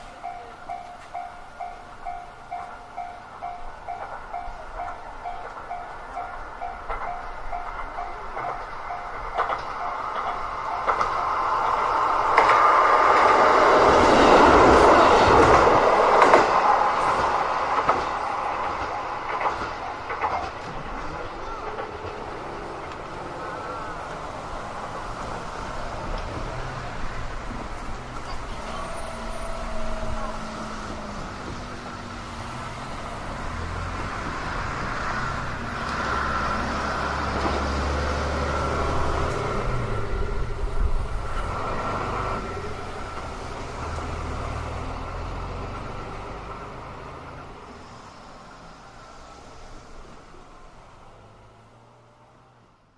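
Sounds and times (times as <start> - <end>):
crossing warning bell ringing: 0.0 - 16.7, 23.3 - 34.0
train wheels clacking over rail joints: 0.0 - 47.4
diesel train passing: 0.0 - 52.9.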